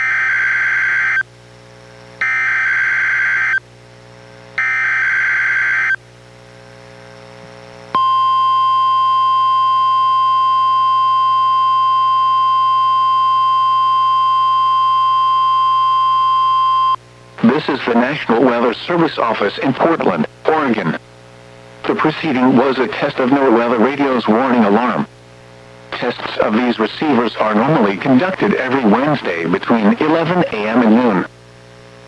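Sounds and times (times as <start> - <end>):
steady warning alarm tone: 2.2 - 3.6, 4.6 - 6.0, 8.0 - 18.7.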